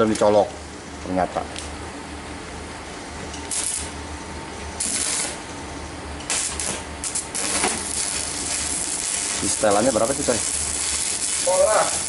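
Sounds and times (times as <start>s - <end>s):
steady low hum: 0.0s - 12.0s
welding arc hissing: 3.4s - 4.0s, 4.8s - 5.5s, 6.2s - 12.0s.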